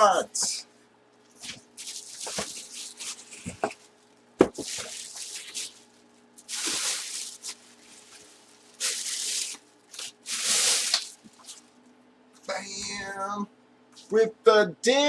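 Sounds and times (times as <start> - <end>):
packaging tearing: 1.4 - 11.6.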